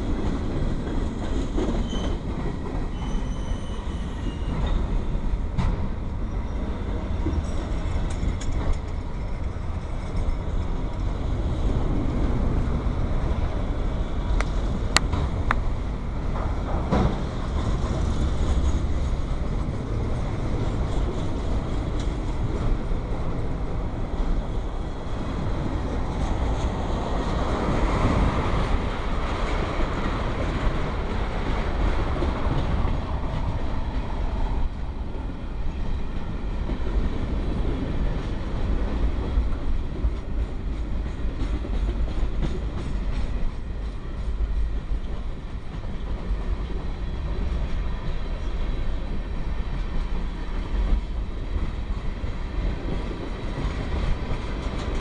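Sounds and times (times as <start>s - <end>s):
freight train rumbling past: 0.0s - 55.0s
wheels clicking over rail joints: 7.2s - 34.7s.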